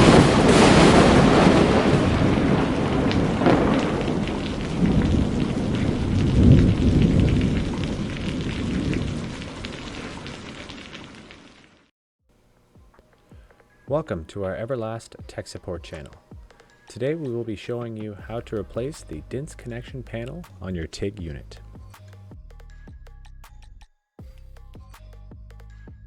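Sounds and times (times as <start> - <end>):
thunder-like rumbling: 0.0 - 10.7
rain-like hiss: 0.0 - 11.9.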